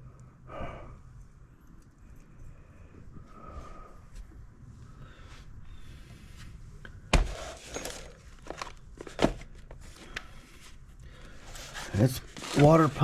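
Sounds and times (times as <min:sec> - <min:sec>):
rummaging clicks and rustling: 0:07.2 - 0:13.0.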